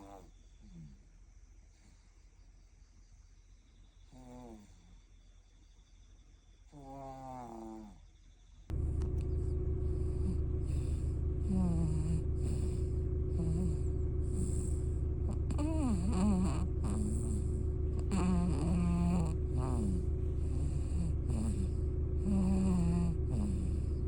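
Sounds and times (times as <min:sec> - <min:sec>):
steady low hum: 0:00.0 - 0:24.0
baby snoring: 0:04.1 - 0:04.8, 0:06.7 - 0:08.0, 0:10.0 - 0:23.9
baby grunting: 0:15.3 - 0:17.4, 0:18.0 - 0:20.1.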